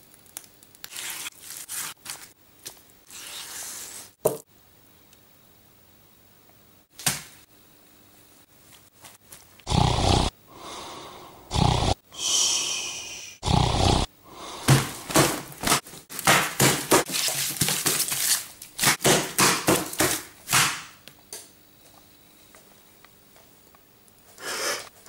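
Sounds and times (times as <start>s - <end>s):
person snoring and snorting: 9.7s - 14.7s.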